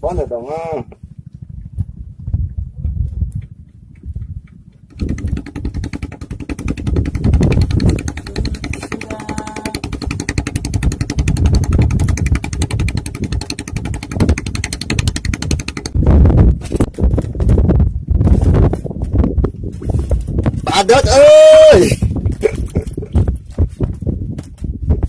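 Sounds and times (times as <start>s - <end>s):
motor engine pulsing: 4.3s - 17.5s.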